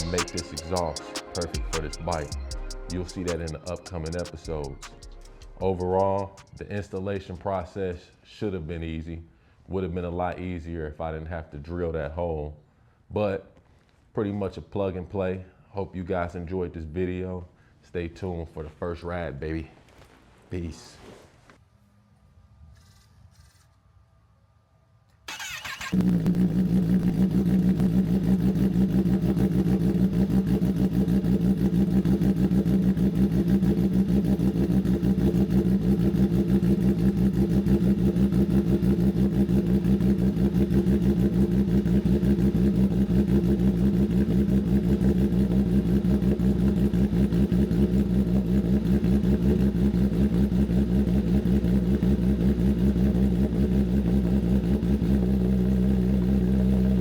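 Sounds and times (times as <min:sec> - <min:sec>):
motorcycle engine idling: 0:00.0 - 0:07.2, 0:25.3 - 0:57.0.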